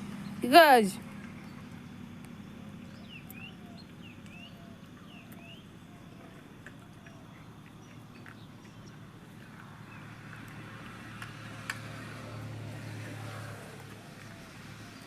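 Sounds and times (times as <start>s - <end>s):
bird chirping: 1.3s - 9.0s.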